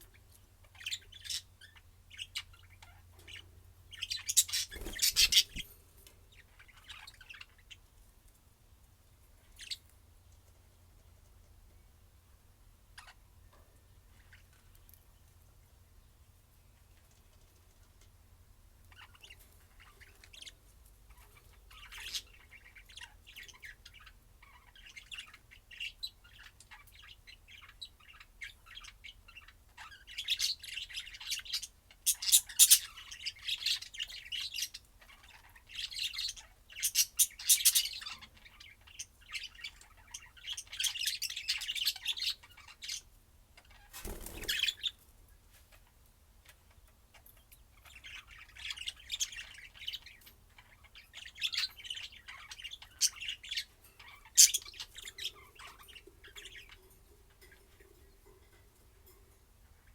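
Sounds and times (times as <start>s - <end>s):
parrots chirping and squawking: 0.7s - 5.8s, 28.1s - 43.0s, 43.6s - 44.9s, 47.2s - 59.1s.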